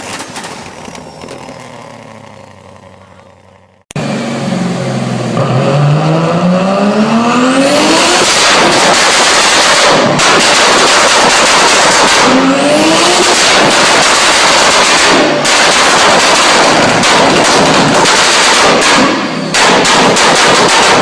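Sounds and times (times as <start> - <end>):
car engine accelerating: 0.4 - 10.2, 12.0 - 15.4.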